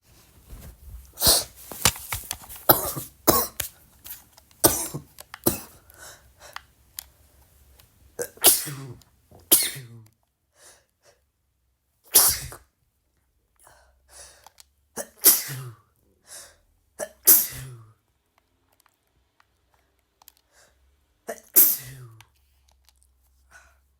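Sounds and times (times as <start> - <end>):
person sneezing: 0.6 - 1.9, 2.5 - 3.7, 4.6 - 6.5, 8.2 - 10.0, 12.1 - 12.6, 15.0 - 15.8, 17.0 - 17.8, 21.3 - 22.1.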